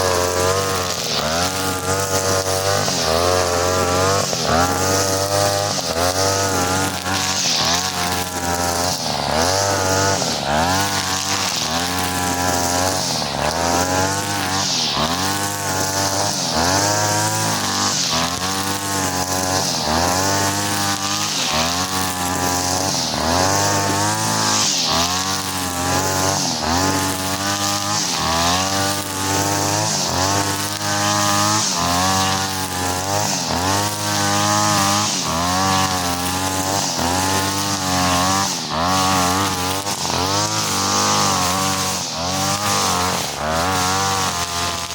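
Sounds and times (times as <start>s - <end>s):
brush cutter engine cutting grass: 0.0s - 44.9s.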